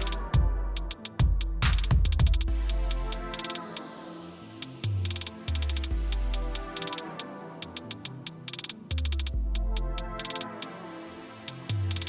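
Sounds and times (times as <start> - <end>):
deep bass: 0.0 - 3.4, 5.6 - 6.7, 9.1 - 10.2
hi-hat ticks: 0.0 - 3.8, 4.6 - 10.7, 11.5 - 12.0.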